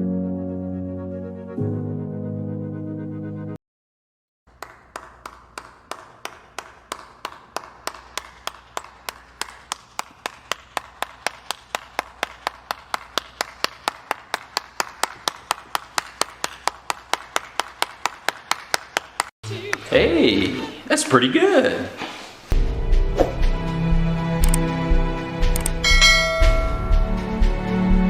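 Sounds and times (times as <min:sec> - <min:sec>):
sharp evenly spaced claps: 0:04.5 - 0:19.3.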